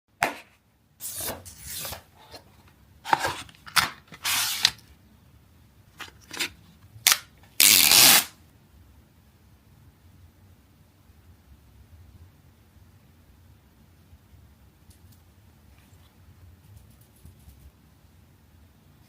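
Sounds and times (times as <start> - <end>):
rubbing and sliding scrapes: 1.0 - 4.8
packaging being opened: 3.1 - 4.8.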